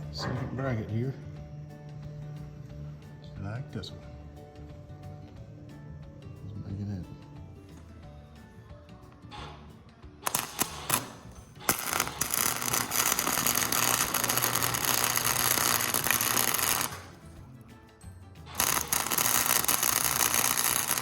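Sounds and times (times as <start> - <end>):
faint background music: 0.0 - 21.0
welder arc crackling: 10.2 - 17.3, 18.5 - 21.0.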